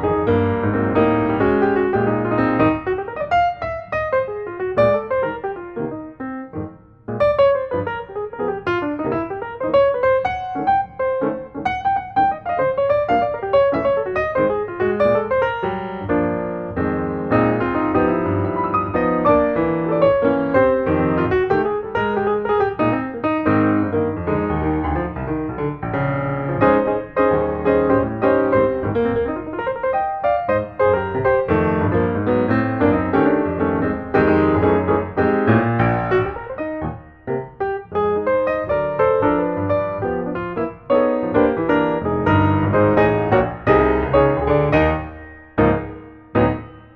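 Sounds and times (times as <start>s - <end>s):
piano music: 0.0s - 46.9s.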